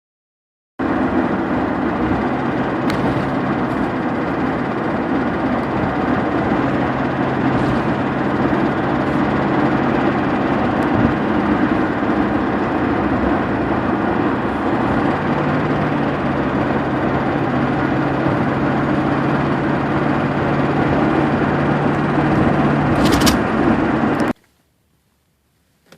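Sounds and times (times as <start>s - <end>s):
car engine running steadily: 0.8s - 24.4s.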